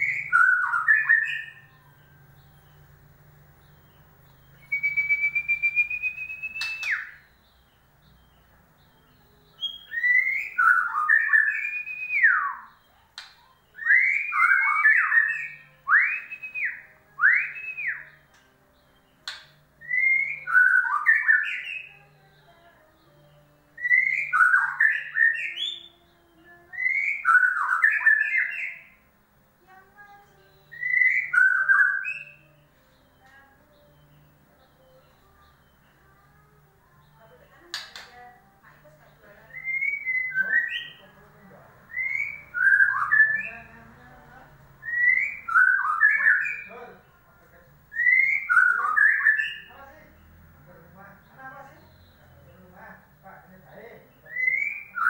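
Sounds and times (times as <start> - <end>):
bird singing fluting whistles: 0.0 - 1.8, 4.4 - 7.4, 9.6 - 13.0, 13.6 - 18.3, 19.3 - 22.0, 23.8 - 26.0, 26.7 - 29.0, 30.6 - 32.5, 39.5 - 41.0, 41.9 - 43.7, 44.8 - 46.7, 47.9 - 49.7, 54.1 - 55.0.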